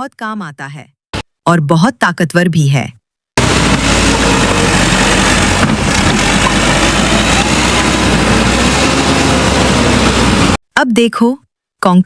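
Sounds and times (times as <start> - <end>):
loader engine running: 3.4 - 10.6.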